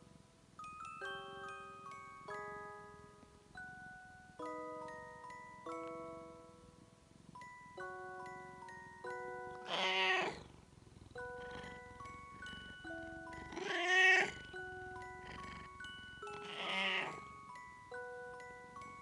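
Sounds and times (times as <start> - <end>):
gentle bell-like music: 0.0 - 19.0
cat meowing: 9.6 - 10.4, 13.5 - 14.4, 16.2 - 17.2.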